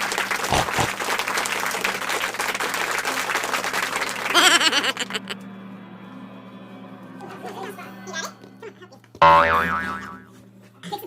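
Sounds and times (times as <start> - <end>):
crowd clapping: 0.0 - 5.4
wobbling pitch sound effect: 9.2 - 10.2.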